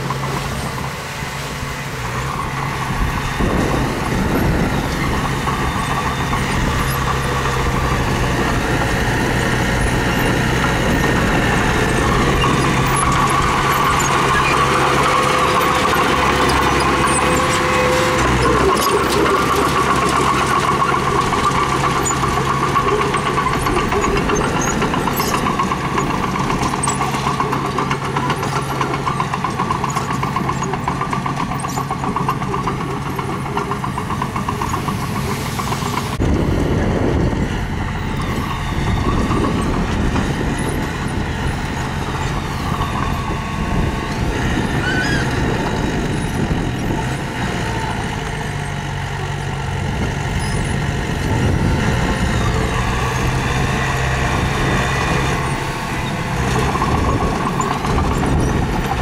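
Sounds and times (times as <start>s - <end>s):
heavy machinery engine running: 0.0s - 59.0s.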